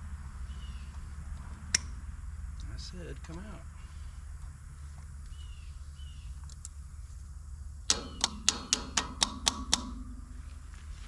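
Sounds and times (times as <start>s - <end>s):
hammer striking metal: 7.9s - 10.2s.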